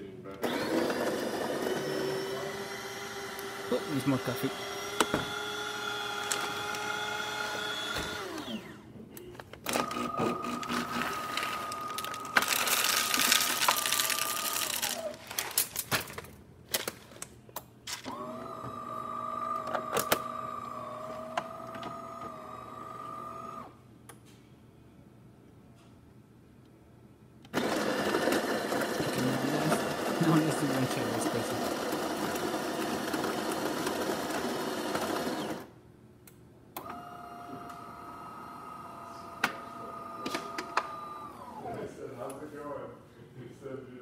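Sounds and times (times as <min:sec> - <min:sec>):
espresso machine motor and pump whine: 0:00.4 - 0:08.8, 0:09.7 - 0:15.1, 0:18.1 - 0:23.8, 0:27.5 - 0:35.7, 0:36.8 - 0:41.8.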